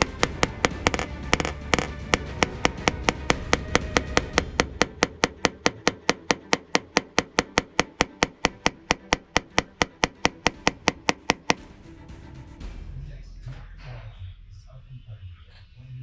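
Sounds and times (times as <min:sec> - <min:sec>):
hammer tapping sheet metal: 0:00.0 - 0:11.7.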